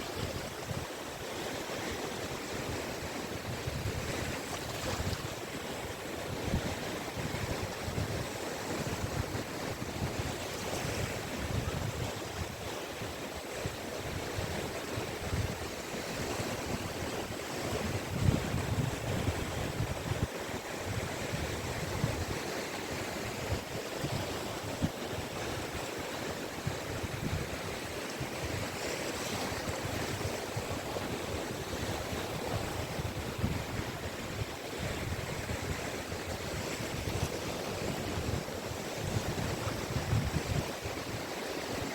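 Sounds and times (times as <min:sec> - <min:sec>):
surf washing onto beach: 0:00.0 - 0:41.9
wind rumbling on microphone: 0:01.8 - 0:41.9.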